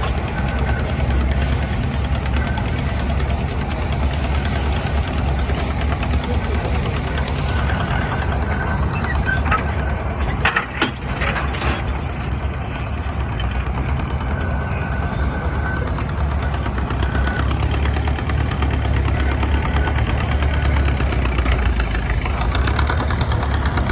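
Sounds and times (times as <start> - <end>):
excavator engine running: 0.0 - 23.9
sharp metal clanks: 7.0 - 15.5.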